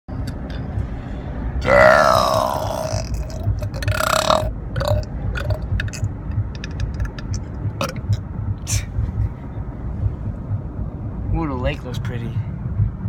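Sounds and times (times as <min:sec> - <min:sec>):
low rumble: 0:00.1 - 0:13.0
person burping: 0:01.6 - 0:08.2.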